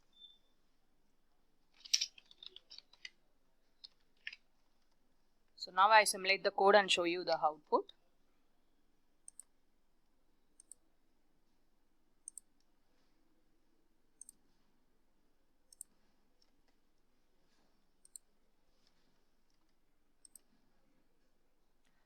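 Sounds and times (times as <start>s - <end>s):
computer mouse double-clicks: 9.2s - 9.5s, 10.6s - 10.8s, 12.2s - 12.5s, 15.7s - 15.9s, 18.0s - 18.3s, 20.2s - 20.5s.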